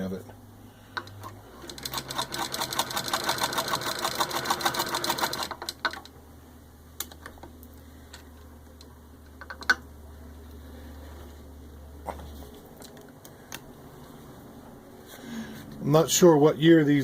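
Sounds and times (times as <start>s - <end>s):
hand-crank sewing machine clatter: 1.6s - 6.1s.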